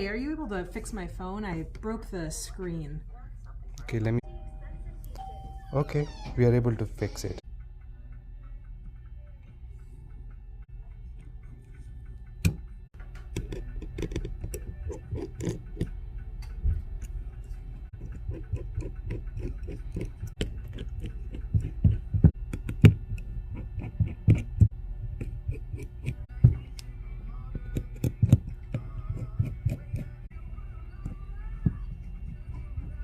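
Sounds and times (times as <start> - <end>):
steady low hum: 6.5 - 33.0
small tools clicking and tapping: 12.3 - 26.9.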